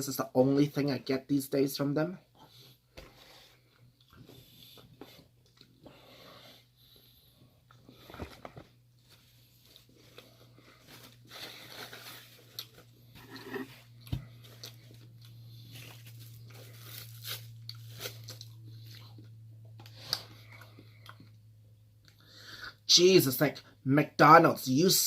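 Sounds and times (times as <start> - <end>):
low steady hum: 0.0 - 25.0
biting and chewing burger: 7.6 - 21.4.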